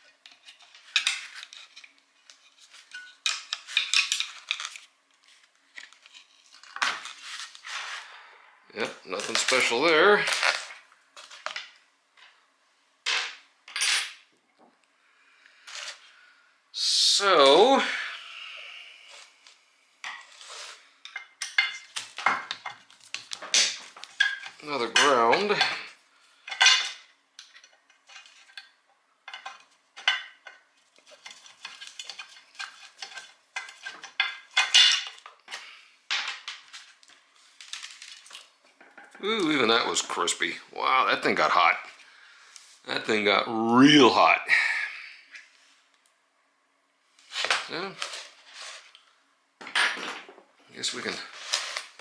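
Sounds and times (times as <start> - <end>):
metal parts clinking on workbench: 13.1 - 14.2
metal parts and tools rattling: 21.1 - 25.9.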